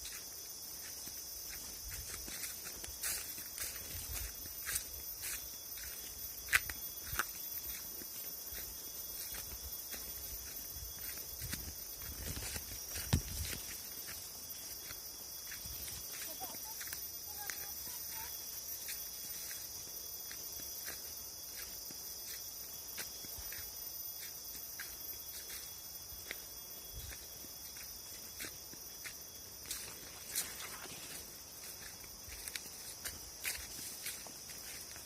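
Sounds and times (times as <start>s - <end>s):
footsteps walking: 0.0s - 35.0s
high-pitched insect drone: 0.0s - 35.0s.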